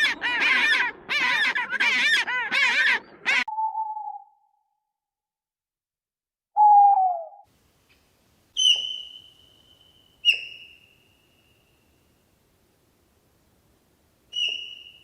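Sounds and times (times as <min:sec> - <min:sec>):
high whistled animal calls: 0:08.6 - 0:11.0.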